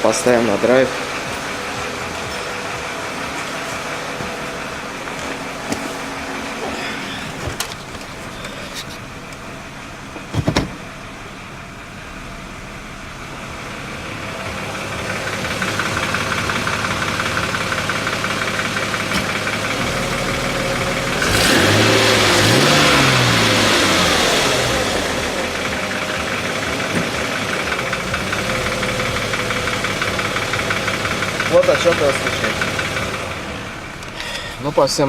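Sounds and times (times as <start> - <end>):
car engine idling with knock: 0.0 - 35.0
short thump: 10.3 - 10.8
engine revving: 13.3 - 34.6.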